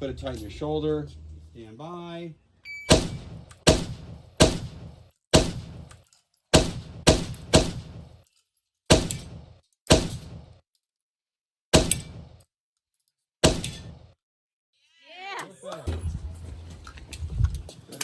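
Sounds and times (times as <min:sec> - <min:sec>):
shotgun blasts: 0:02.9 - 0:05.9, 0:06.5 - 0:08.1, 0:08.9 - 0:10.4, 0:11.7 - 0:12.3, 0:13.4 - 0:13.9.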